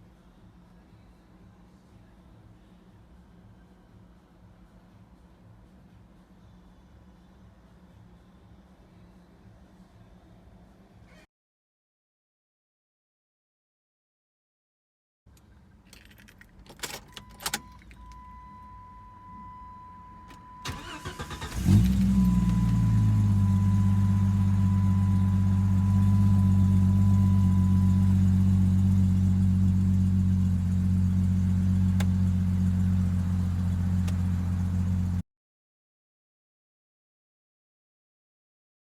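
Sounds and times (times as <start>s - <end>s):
car engine starting and idling: 15.3s - 35.2s.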